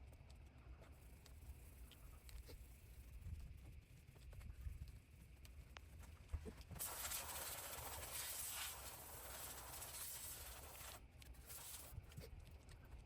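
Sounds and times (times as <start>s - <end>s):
compressed air hiss: 6.8s - 11.9s.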